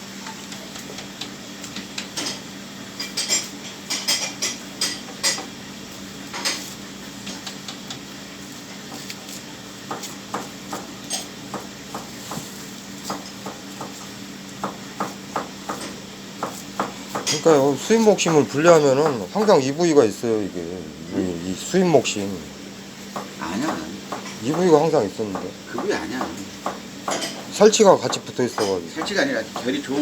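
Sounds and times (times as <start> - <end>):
steady low hum: 3.3 - 30.0
knife tapping on cutting board: 9.9 - 10.9, 23.1 - 27.4, 28.0 - 29.8.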